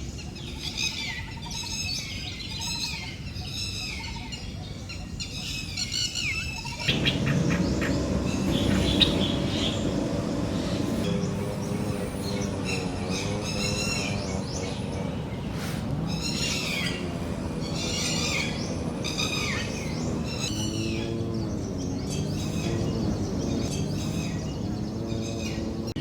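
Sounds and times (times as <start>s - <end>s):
birds calling: 0.0s - 26.0s
steady low rumble: 6.8s - 26.0s.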